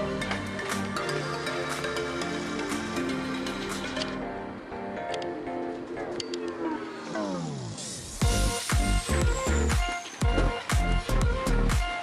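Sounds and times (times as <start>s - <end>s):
background music with held notes: 0.0s - 12.0s
sharp percussion hits: 7.8s - 10.9s.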